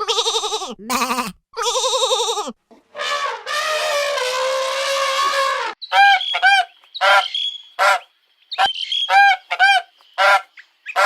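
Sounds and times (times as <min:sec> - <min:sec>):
animal's long brassy call: 0:02.9 - 0:08.0.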